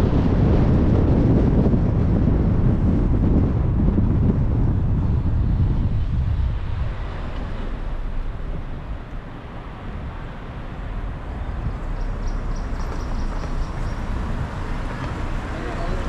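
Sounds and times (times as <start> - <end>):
tyre and wind road noise: 0.0 - 16.0.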